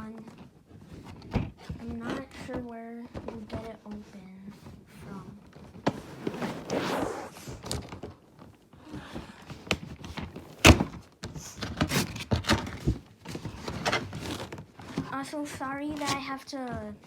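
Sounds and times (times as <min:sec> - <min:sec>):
package handling knocks and rustles: 0:09.5 - 0:15.1.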